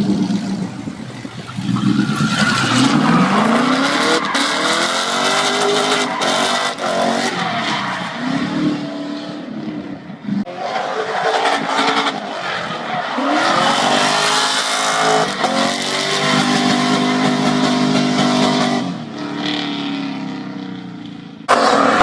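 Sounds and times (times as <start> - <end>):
car engine revving hard: 1.7 - 7.4.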